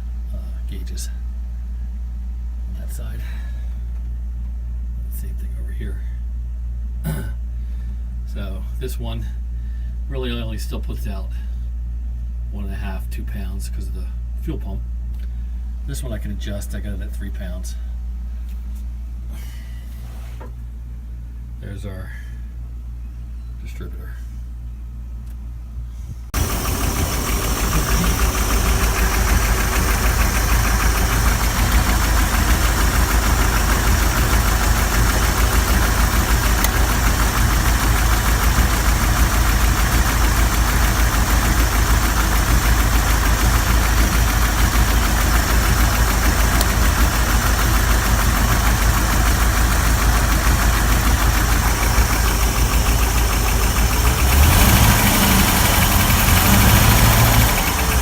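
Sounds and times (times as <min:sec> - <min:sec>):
engine valve tapping: 0:26.4 - 0:54.8
boat engine idling: 0:26.4 - 0:58.0.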